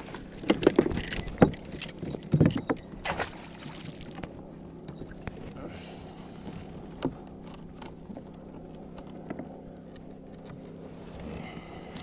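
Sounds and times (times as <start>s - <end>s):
knocks and rattles on plastic kayak: 0.0s - 5.4s.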